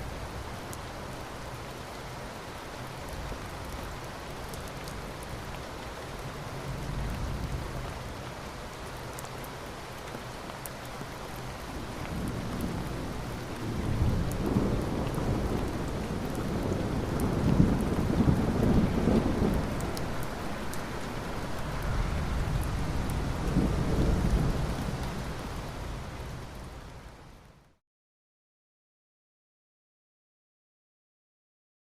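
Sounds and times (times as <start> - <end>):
steady rain: 0.0 - 27.8
rolling thunder: 12.1 - 20.0.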